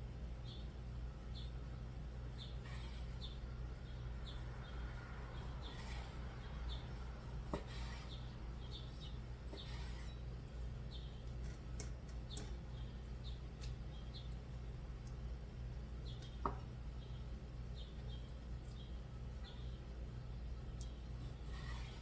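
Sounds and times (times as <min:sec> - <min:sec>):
steady low hum: 0:00.0 - 0:22.0
knife cutting raw chicken: 0:07.0 - 0:08.2.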